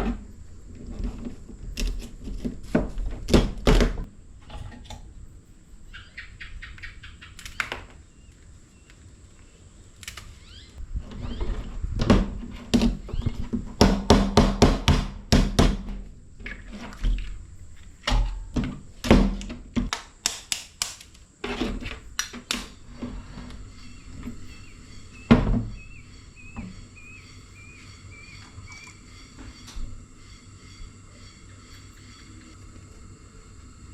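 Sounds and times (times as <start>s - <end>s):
chopping on wooden board: 13.8s - 15.9s.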